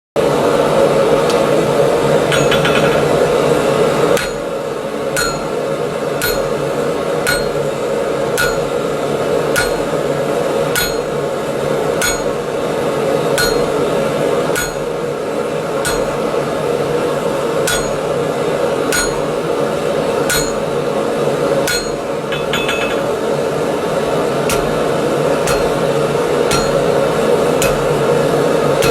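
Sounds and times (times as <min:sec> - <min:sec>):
hammer striking an anvil: 0:02.2 - 0:03.2, 0:04.2 - 0:04.5, 0:05.1 - 0:05.6, 0:06.2 - 0:07.7, 0:08.4 - 0:08.8, 0:09.5 - 0:10.0, 0:10.7 - 0:11.2, 0:12.0 - 0:12.4, 0:13.4 - 0:13.8, 0:14.6 - 0:14.9, 0:15.8 - 0:16.3, 0:17.6 - 0:18.1, 0:18.9 - 0:19.4, 0:20.3 - 0:20.8, 0:21.6 - 0:23.2, 0:24.5 - 0:24.8, 0:25.4 - 0:28.0.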